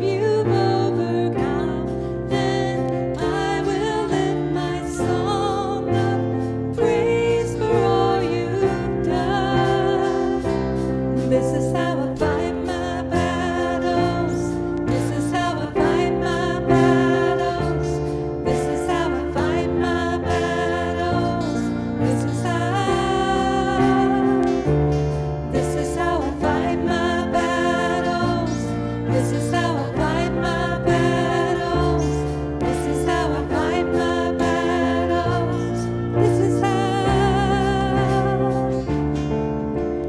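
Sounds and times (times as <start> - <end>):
voices singing: 0.0 - 10.6, 11.2 - 24.7, 25.5 - 38.8
worship band playing: 0.0 - 40.0.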